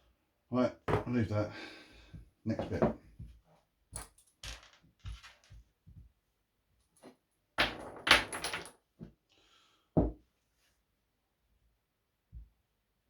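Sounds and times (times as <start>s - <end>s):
tools clattering on workbench: 7.0s - 8.8s.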